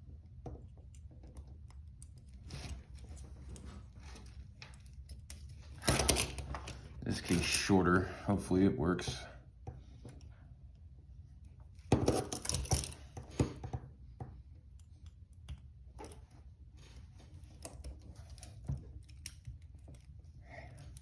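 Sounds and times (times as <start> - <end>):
handcuff chain rattling: 12.1 - 13.0.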